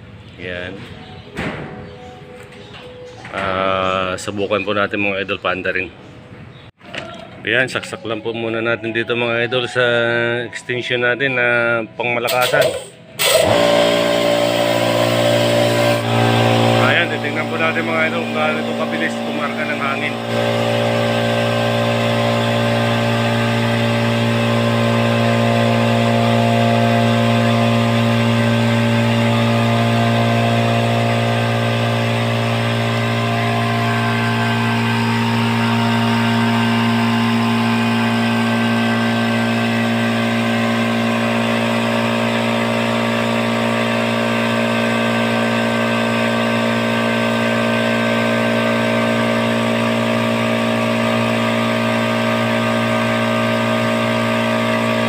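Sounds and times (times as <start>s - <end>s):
electric air compressor running: 12.2s - 55.0s.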